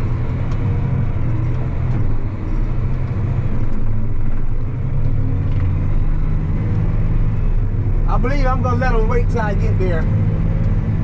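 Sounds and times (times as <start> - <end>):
tractor diesel engine drone: 0.0 - 11.0.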